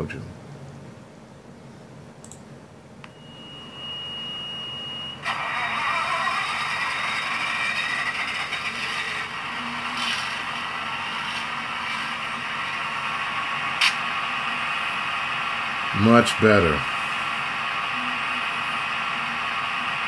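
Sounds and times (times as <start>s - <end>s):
thin high tone: 3.0s - 5.8s
model diesel engine sound: 3.1s - 20.0s.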